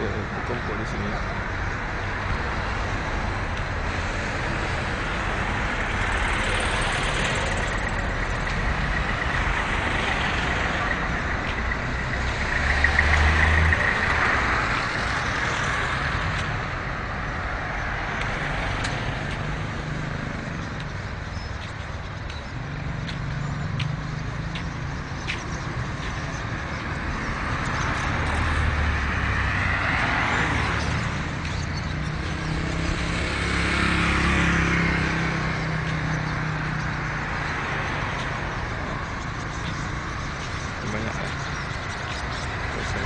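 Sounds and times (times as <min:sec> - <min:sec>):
road traffic: 0:00.0 - 0:43.0
vehicle passing close: 0:02.6 - 0:16.7, 0:23.2 - 0:43.0.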